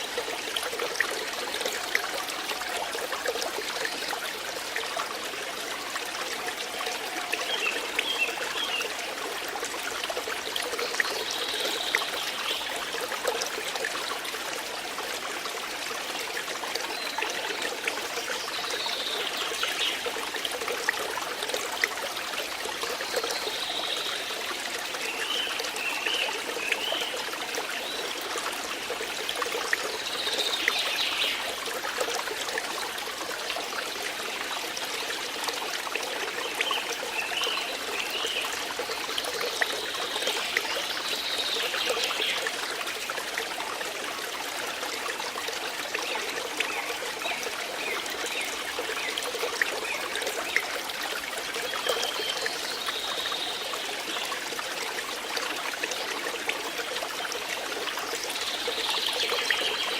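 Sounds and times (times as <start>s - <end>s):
water flowing and trickling: 0.0s - 59.9s.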